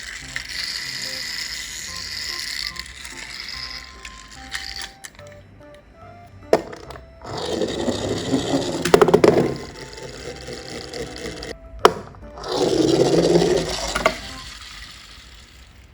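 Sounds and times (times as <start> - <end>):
toy cars rolling on plastic: 0.0 - 5.3, 6.6 - 11.6, 12.4 - 15.9
toy cars clacking: 0.0 - 5.4, 6.5 - 15.9.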